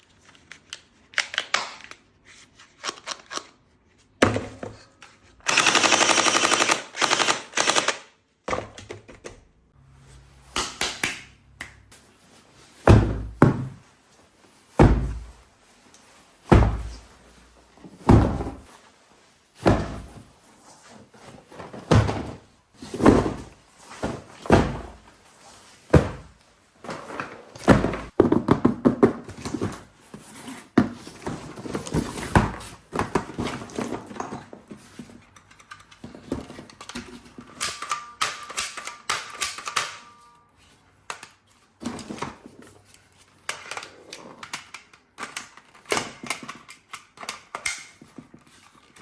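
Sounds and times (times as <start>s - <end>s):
hard objects knocking and clattering: 27.6s - 29.8s.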